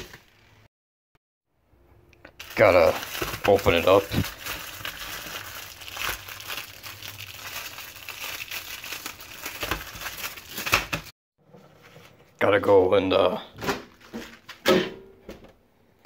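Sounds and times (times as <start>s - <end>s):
plastic wrapping crinkling: 2.3s - 11.1s.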